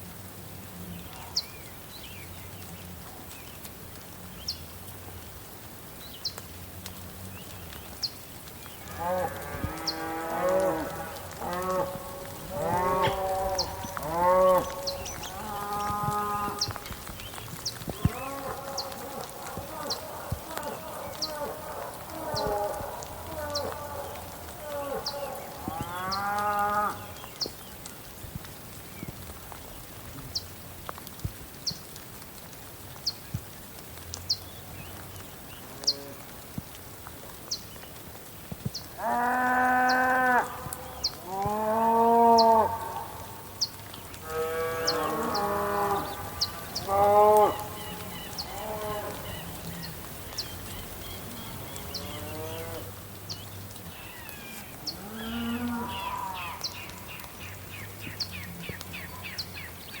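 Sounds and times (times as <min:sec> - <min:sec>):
rain hiss: 0:00.0 - 1:00.0
cows mooing: 0:08.8 - 0:16.8, 0:18.0 - 0:27.1, 0:39.0 - 0:43.3, 0:44.2 - 0:50.0, 0:51.3 - 0:52.9, 0:54.8 - 0:56.5.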